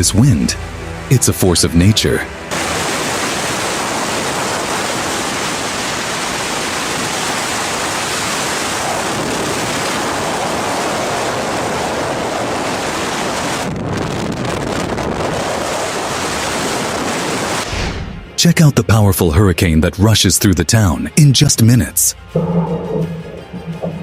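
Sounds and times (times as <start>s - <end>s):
strong wind buffeting microphone: 2.5s - 17.7s.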